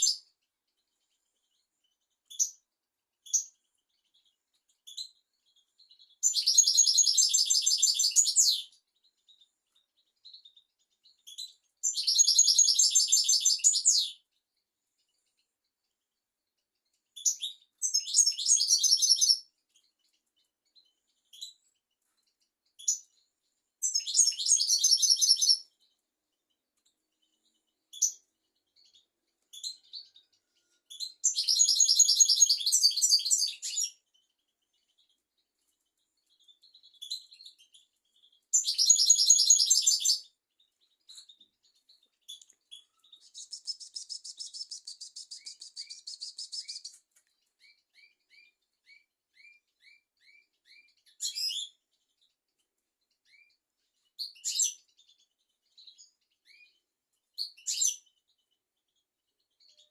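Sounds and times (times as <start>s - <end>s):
rapid bird trill: 10.2s - 14.2s, 23.8s - 25.8s, 27.3s - 34.3s, 36.4s - 51.8s
goldfinch twittering: 42.3s - 47.0s.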